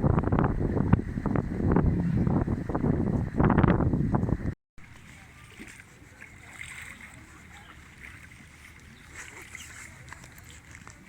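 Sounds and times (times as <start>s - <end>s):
water lapping and splashing: 0.0s - 11.0s
wind rumbling on microphone: 0.0s - 11.0s.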